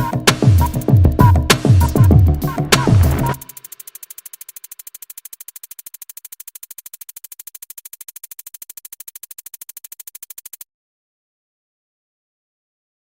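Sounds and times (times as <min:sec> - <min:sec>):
rapidly pulsing synthesizer: 0:00.0 - 0:10.6.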